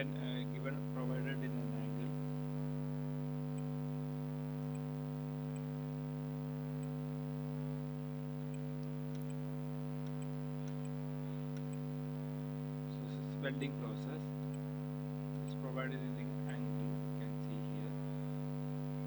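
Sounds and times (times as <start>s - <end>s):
steady electrical hum: 0.0s - 19.0s
faint high ticks: 4.6s - 5.8s, 6.7s - 7.0s, 8.4s - 12.0s.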